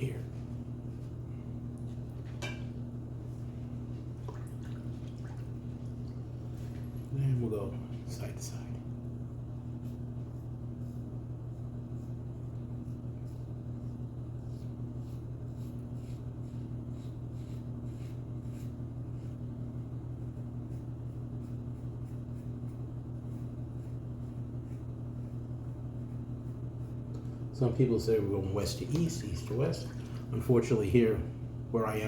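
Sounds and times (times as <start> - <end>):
laundry machine humming: 0.0 - 9.7, 26.9 - 32.0.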